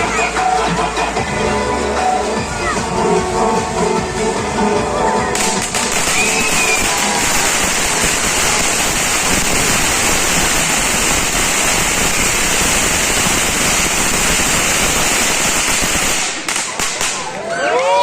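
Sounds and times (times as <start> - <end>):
firework fountains hissing: 5.3 - 17.5.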